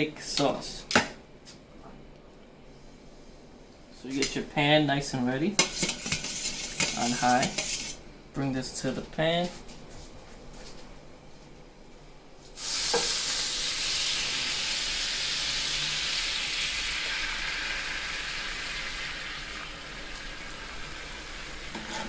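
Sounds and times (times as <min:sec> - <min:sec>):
juices sizzling in a pan: 0:12.6 - 0:22.0.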